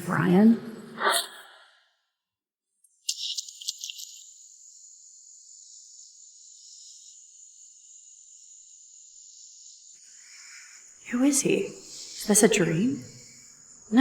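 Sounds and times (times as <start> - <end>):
crickets chirring: 2.9 - 14.0.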